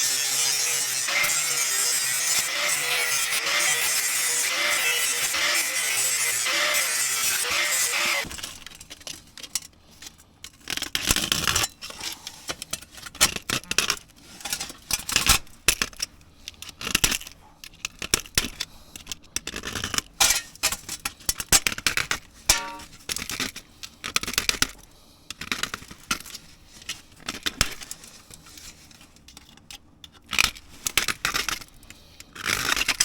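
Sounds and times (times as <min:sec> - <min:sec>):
short metallic ring: 0:22.5 - 0:22.9
thin metal clinking and scraping: 0:22.5 - 0:22.9.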